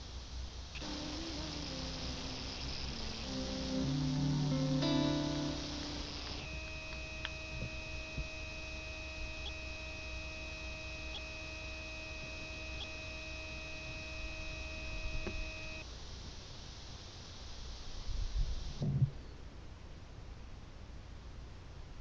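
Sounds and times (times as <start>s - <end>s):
high thin whine: 0.0s - 19.0s
phone electronic hum: 0.0s - 19.2s
faint ticks: 0.7s - 15.9s.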